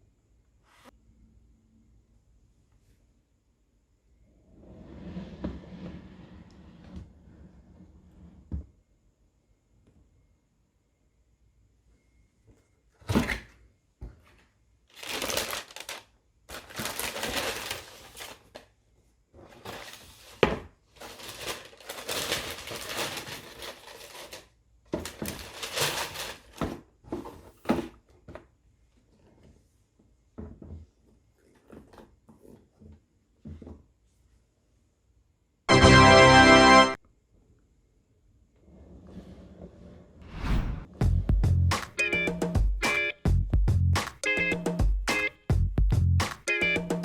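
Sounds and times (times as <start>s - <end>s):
paper packing crinkling: 14.9s - 18.7s, 19.5s - 20.4s, 21.0s - 26.7s.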